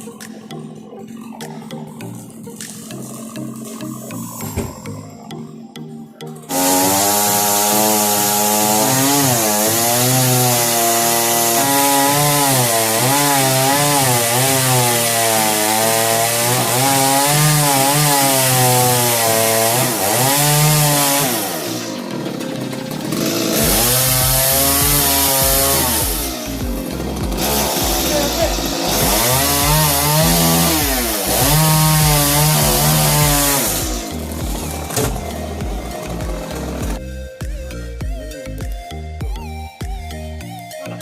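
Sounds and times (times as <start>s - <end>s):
chainsaw cutting wood: 6.5s - 37.1s.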